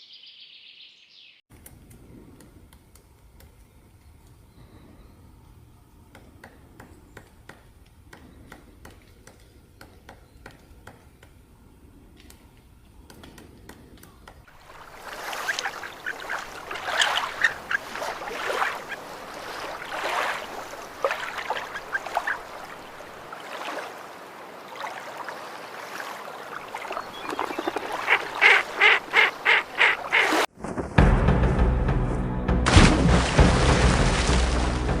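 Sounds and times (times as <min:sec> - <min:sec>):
waterfowl honking: 0:14.7 - 0:23.3, 0:26.4 - 0:30.5.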